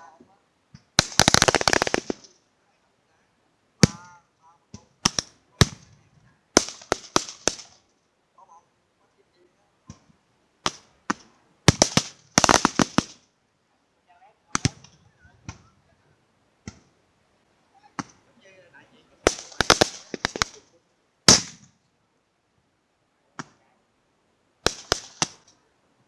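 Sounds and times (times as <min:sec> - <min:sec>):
gunshots: 0:01.0 - 0:02.3, 0:03.8 - 0:04.2, 0:05.0 - 0:05.9, 0:06.6 - 0:07.8, 0:10.6 - 0:13.2, 0:19.2 - 0:20.6, 0:21.3 - 0:21.7, 0:24.6 - 0:25.5.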